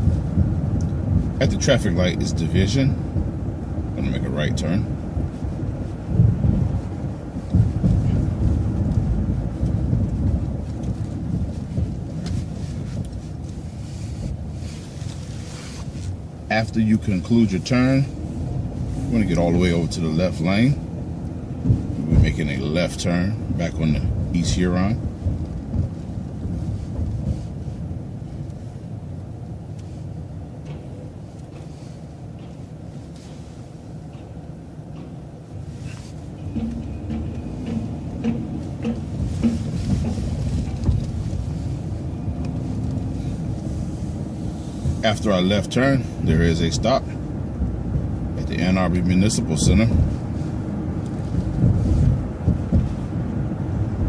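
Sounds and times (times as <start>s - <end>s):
vehicle engine and road rumble: 0.0s - 54.0s
faint knocks: 36.4s - 41.4s
thumps: 36.4s - 41.8s.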